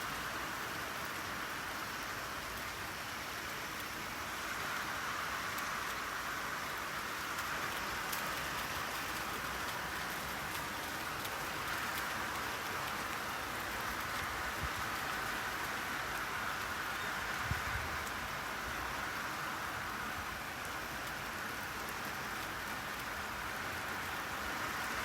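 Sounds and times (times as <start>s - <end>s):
steady rainfall: 0.0s - 25.0s
raindrop ticks: 4.6s - 18.9s, 19.9s - 25.0s.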